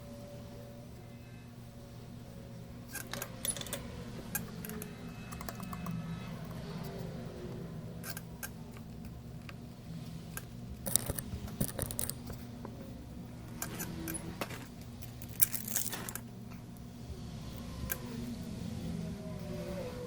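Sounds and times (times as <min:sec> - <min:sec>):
steady low hum: 0:00.0 - 0:20.0
tools clicking and tapping: 0:10.3 - 0:12.8.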